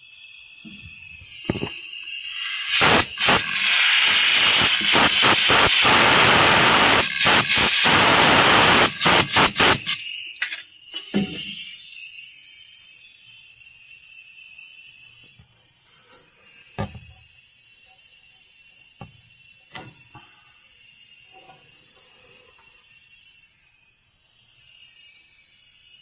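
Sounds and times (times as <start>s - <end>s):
pressurised jet hissing: 1.0s - 10.0s.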